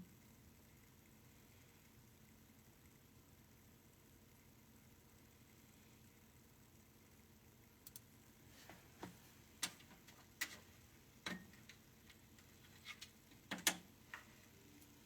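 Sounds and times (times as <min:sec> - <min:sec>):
faint light clicks and taps: 0:07.8 - 0:14.9.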